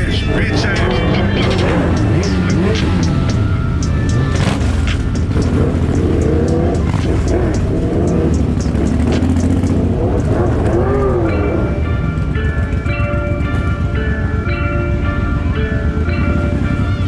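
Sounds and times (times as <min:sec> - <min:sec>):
motorcycle engine revving: 0:00.0 - 0:13.5.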